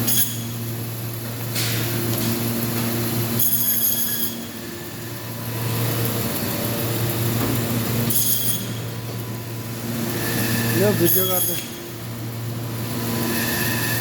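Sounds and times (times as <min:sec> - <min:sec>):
bandsaw motor hum: 0:00.0 - 0:14.0
saw blade ringing whine: 0:03.3 - 0:07.3, 0:08.0 - 0:14.0.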